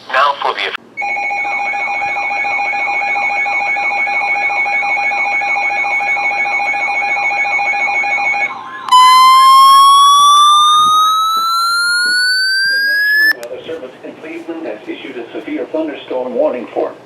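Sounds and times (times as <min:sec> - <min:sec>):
warbling alarm tone: 0:01.0 - 0:13.4
rising pure tone: 0:08.9 - 0:13.4.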